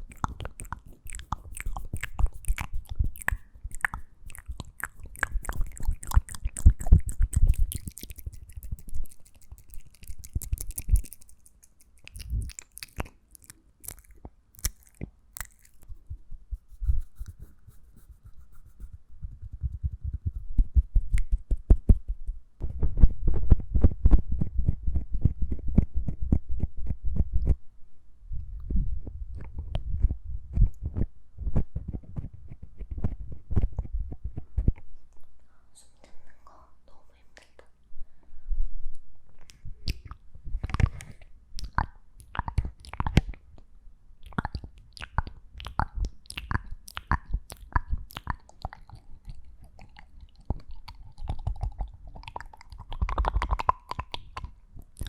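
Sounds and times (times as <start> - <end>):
tongue clicks: 0.0 - 16.0, 39.5 - 55.0
lip smacks: 0.0 - 16.1, 39.5 - 55.0.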